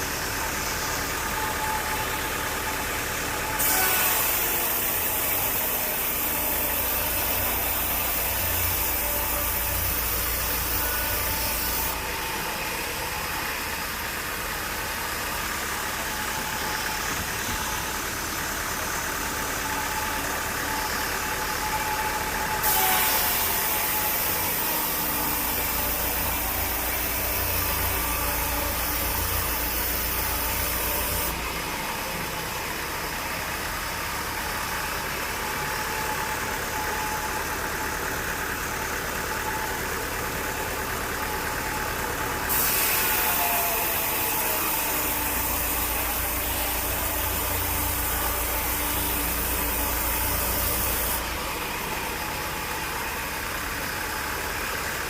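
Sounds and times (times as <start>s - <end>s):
sawmill machinery running: 0.0s - 55.0s
saw cutting wood: 3.5s - 12.0s, 22.6s - 31.4s, 42.4s - 51.4s.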